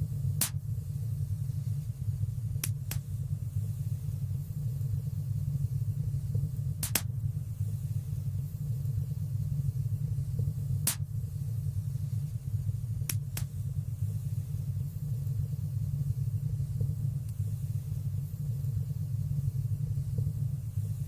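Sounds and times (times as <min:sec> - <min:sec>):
fire crackling pops: 0:00.3 - 0:00.8, 0:02.4 - 0:03.3, 0:06.6 - 0:07.3, 0:10.7 - 0:11.3, 0:12.9 - 0:13.8.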